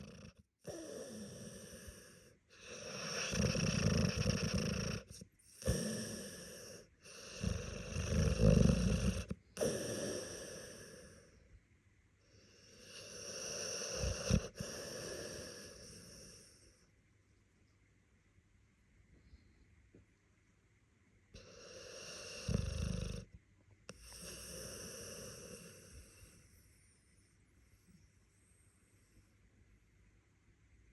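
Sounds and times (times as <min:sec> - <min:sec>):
dog snoring: 0:00.0 - 0:11.3, 0:12.5 - 0:16.7, 0:21.4 - 0:26.7.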